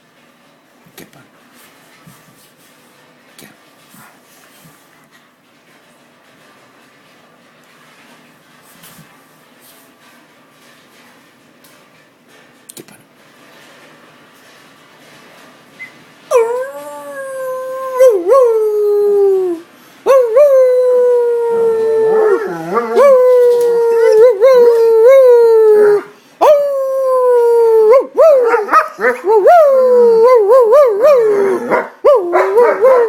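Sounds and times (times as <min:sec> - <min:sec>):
dog howling: 0:16.3 - 0:33.0.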